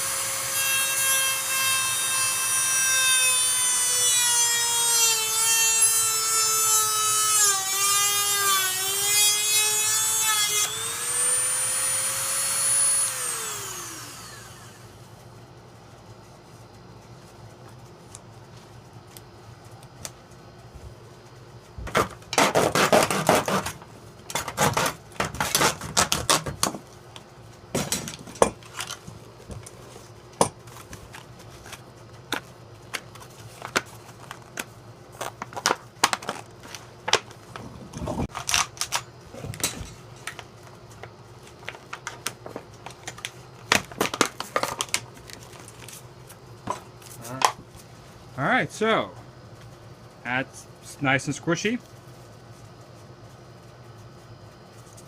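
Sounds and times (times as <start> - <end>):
packaging crinkling and rustling: 30.7 - 37.6, 40.2 - 46.1.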